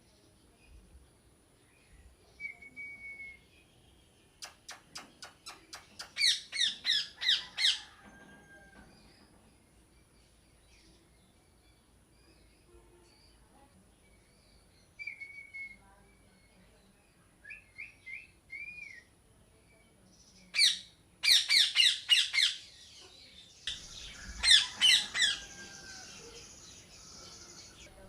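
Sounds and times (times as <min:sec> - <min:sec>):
parrot squawks: 0:20.6 - 0:22.6, 0:24.4 - 0:25.5.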